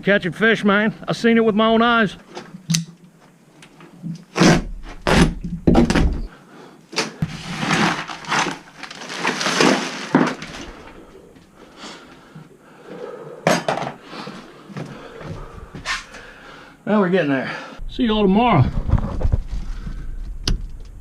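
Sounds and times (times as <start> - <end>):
scraping and rustling: 7.2 - 11.5.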